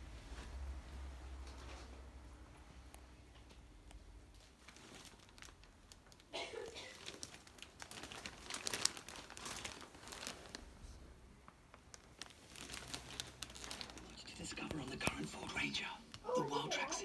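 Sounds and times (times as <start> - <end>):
packaging crinkling and rustling: 4.3 - 16.4.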